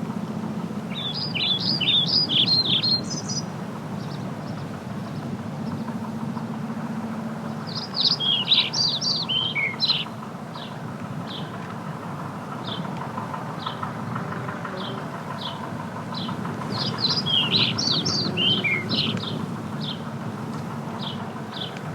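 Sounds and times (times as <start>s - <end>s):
songbird chirping: 7.7s - 10.1s, 16.2s - 20.0s.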